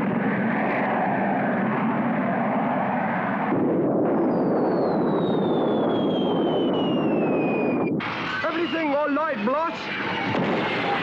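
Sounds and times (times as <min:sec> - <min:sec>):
falling whistle: 0:04.2 - 0:09.0.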